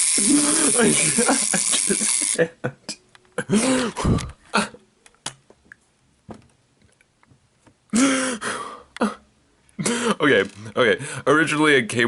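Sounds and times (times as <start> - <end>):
man laughing or groaning: 0.2 - 4.8.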